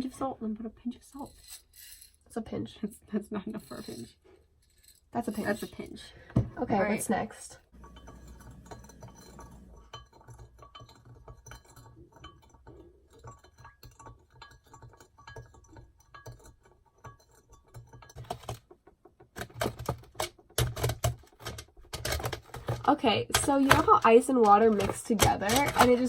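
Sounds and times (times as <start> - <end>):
kitchen utensils clinking: 5.1 - 18.6, 20.6 - 26.0.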